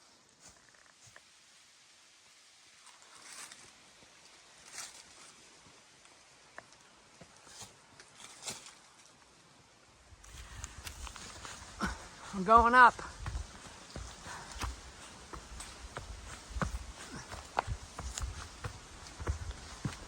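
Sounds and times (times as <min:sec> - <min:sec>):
footsteps on rocky trail: 0:10.2 - 0:20.0.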